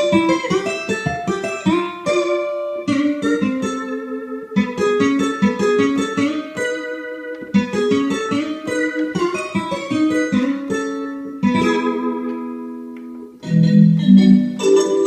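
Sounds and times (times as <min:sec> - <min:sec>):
synthesizer plucked melody: 0:00.0 - 0:15.0.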